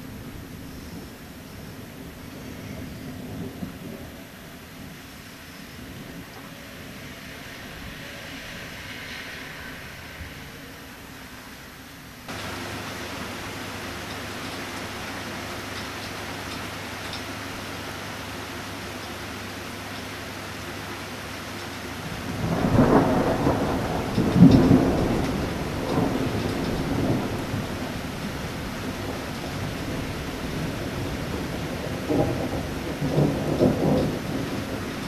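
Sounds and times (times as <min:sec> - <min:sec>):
steady rain: 0:00.0 - 0:35.0
thunder crashing and rumbling: 0:22.0 - 0:35.0.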